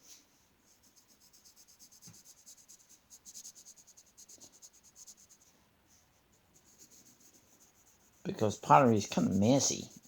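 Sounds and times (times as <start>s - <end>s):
colouring strokes on paper: 0.0s - 10.0s.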